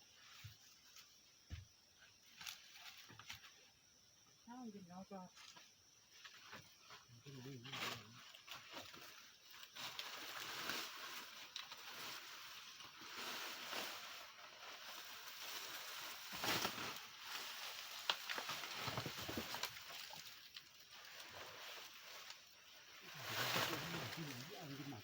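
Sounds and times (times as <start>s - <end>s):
dry stalks rustling and crackling: 2.2s - 3.5s, 7.6s - 25.0s
stalk snapping: 16.4s - 20.7s.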